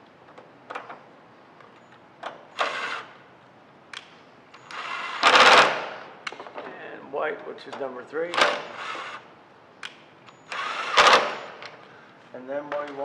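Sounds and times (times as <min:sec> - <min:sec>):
motorized screwdriver whirring: 0:04.6 - 0:05.8, 0:08.4 - 0:09.2, 0:10.4 - 0:11.6.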